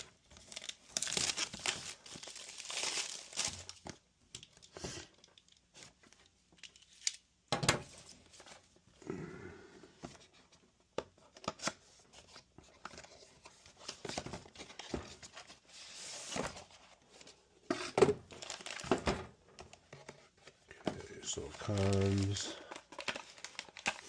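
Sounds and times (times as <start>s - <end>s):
plastic packaging crinkling: 0.3s - 3.9s, 18.3s - 19.0s, 21.0s - 24.0s.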